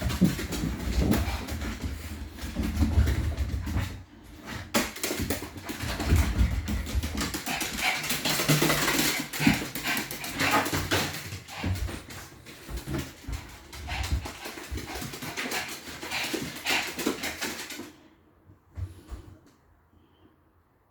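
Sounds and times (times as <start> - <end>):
dogs scuffing and knocking: 0.0 - 17.8.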